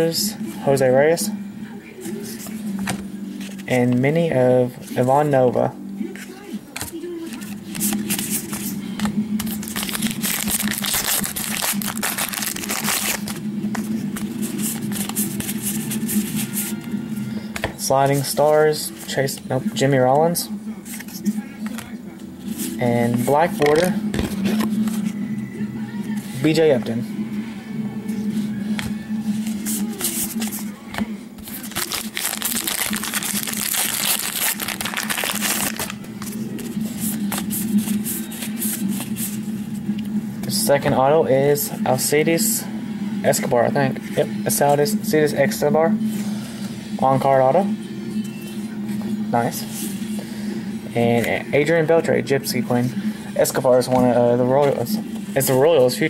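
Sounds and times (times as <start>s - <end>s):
steady low hum: 0.0s - 56.0s
wrapper and cards crinkling: 9.4s - 16.8s, 31.4s - 39.3s.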